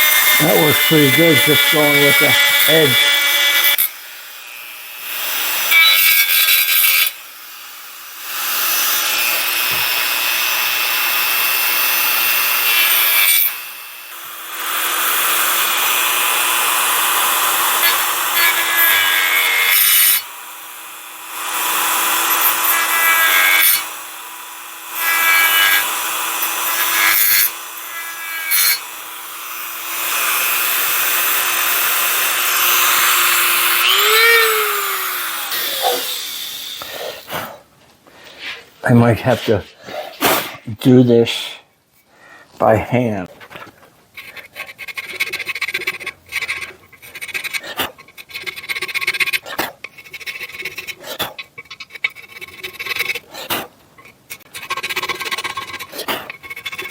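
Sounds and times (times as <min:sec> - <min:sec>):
rotary tool motor whine: 0:00.0 - 0:37.3
rotary tool grinding metal: 0:00.0 - 0:37.5, 0:44.1 - 0:56.9.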